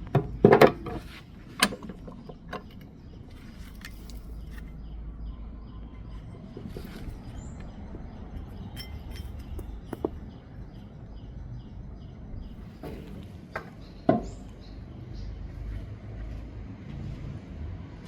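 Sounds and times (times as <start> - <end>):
sharp clinks and knocks: 8.4 - 10.4.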